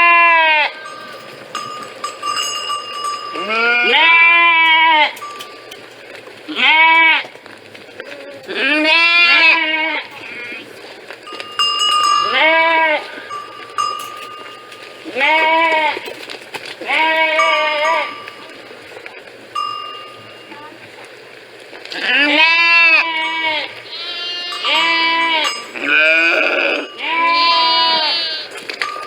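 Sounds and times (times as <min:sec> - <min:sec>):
sheep bleating: 0:00.0 - 0:05.9, 0:06.5 - 0:07.4, 0:08.0 - 0:10.8, 0:12.2 - 0:16.2, 0:16.8 - 0:18.7, 0:21.9 - 0:29.0.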